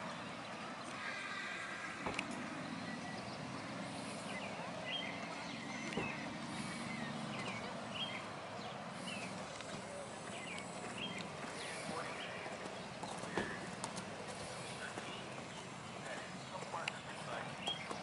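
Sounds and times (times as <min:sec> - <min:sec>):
horse hooves clip-clopping: 0:07.2 - 0:18.0.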